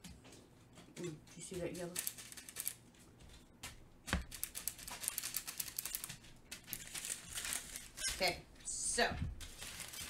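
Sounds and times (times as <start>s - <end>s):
plastic beads rattling in a bag: 1.8s - 2.8s, 4.3s - 8.3s, 9.4s - 10.0s.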